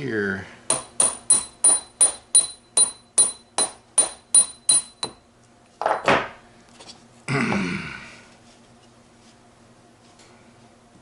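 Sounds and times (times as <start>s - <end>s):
hammer tapping on metal: 0.7s - 5.2s.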